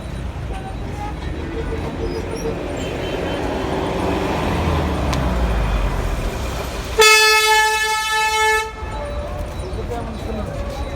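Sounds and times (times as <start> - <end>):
road traffic rumble: 0.0 - 10.9
vehicle horn: 0.5 - 4.7, 7.0 - 9.3.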